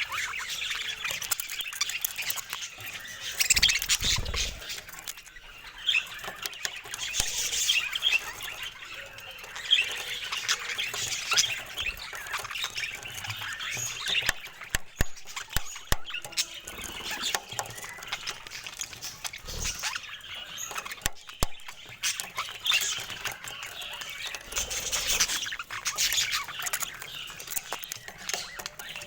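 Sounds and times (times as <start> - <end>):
budgerigars chattering: 0.0 - 29.0
sharp clicks: 13.8 - 20.0, 20.7 - 23.2.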